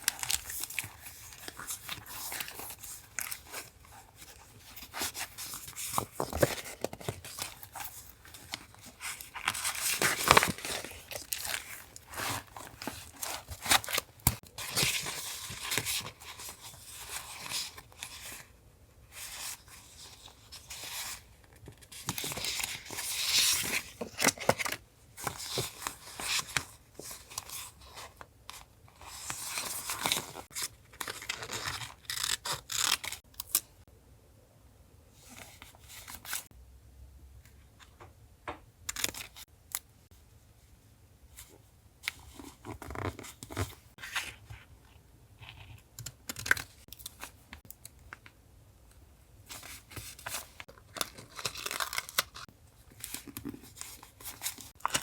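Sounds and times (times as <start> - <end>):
paper rustling: 0.0 - 18.4.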